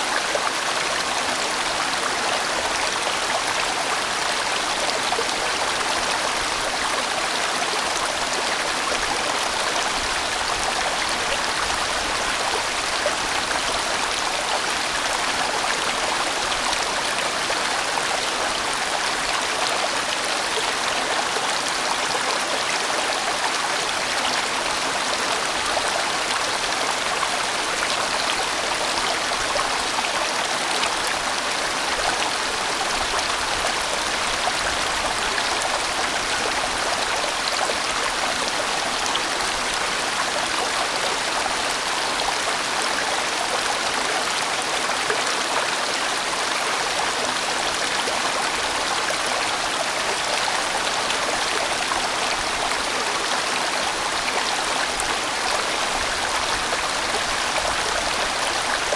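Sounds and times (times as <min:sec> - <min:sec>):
stream rushing over rocks: 0:00.0 - 0:58.9.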